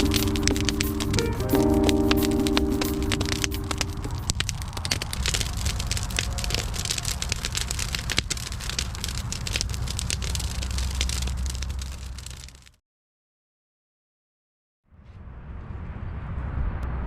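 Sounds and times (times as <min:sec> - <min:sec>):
low fire rumble: 0:00.0 - 0:12.7
wood fire crackling and popping: 0:00.0 - 0:12.8.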